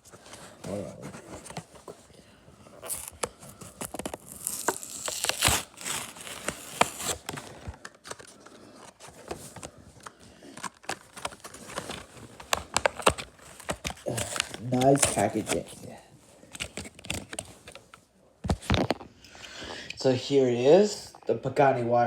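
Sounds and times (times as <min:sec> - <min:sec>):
cardboard and plastic ripping: 0:02.8 - 0:17.8.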